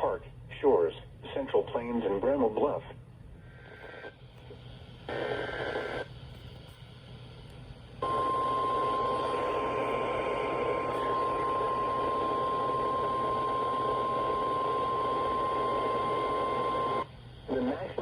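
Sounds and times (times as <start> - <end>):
radio static: 5.1 - 6.1, 8.0 - 18.0.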